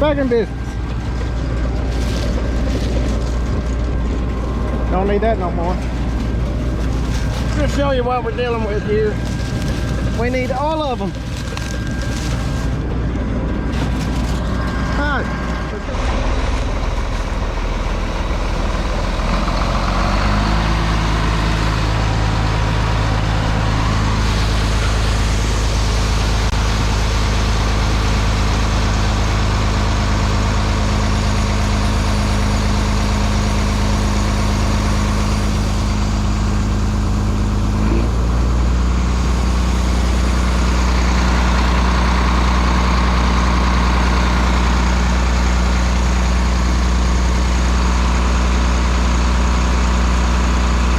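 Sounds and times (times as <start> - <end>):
combine engine running: 0.0 - 50.9.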